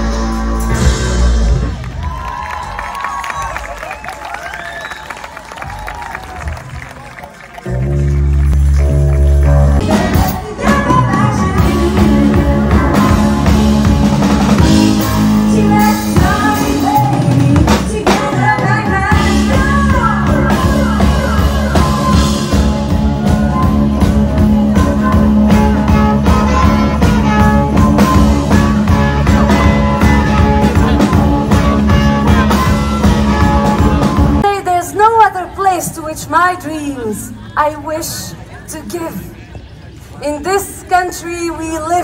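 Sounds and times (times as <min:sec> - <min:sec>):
loud rock music: 0:00.0 - 0:02.2, 0:07.7 - 0:34.5.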